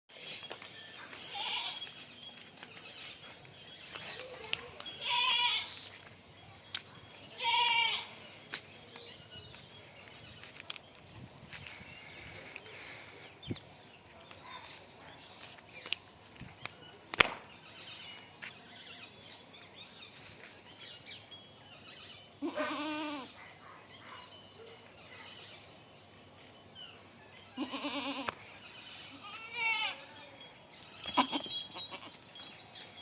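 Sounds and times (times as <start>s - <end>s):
goats bleating: 7.4s - 8.1s, 22.4s - 23.3s, 27.6s - 28.4s, 31.1s - 32.2s.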